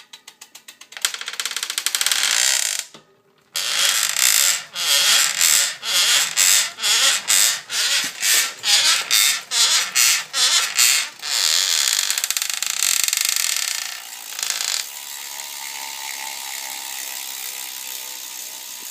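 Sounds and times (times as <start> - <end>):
bicycle bottom bracket creaking: 0.9 - 3.0, 3.6 - 15.0
bicycle drivetrain whir: 3.9 - 18.9.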